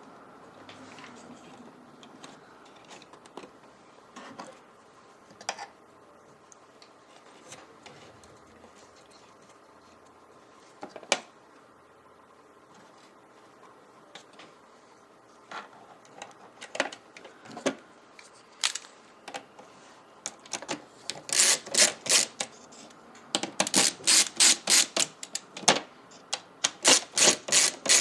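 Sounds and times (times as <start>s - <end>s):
small computer parts clicking: 20.5s - 22.5s, 23.6s - 25.5s, 26.7s - 28.0s.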